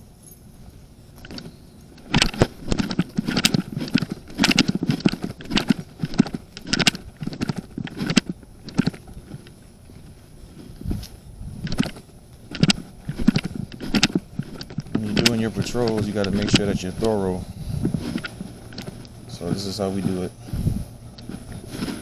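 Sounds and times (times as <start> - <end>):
quick uneven footsteps: 1.2 - 22.0.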